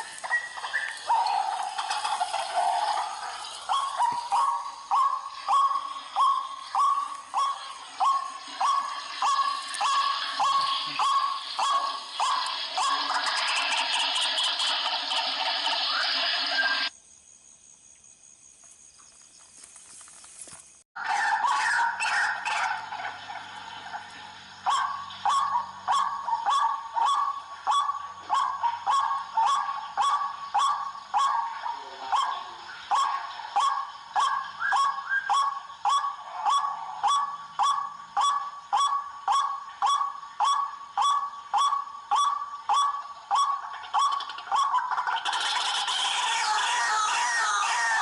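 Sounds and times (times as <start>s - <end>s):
waterhen calling: 0.0s - 16.9s, 21.0s - 48.0s.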